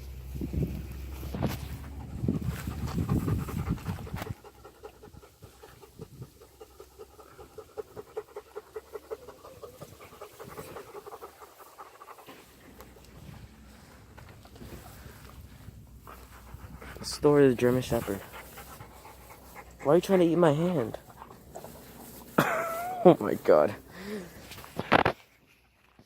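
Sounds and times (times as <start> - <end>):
low wind rumble: 0.0 - 8.1
dog panting: 0.8 - 24.6.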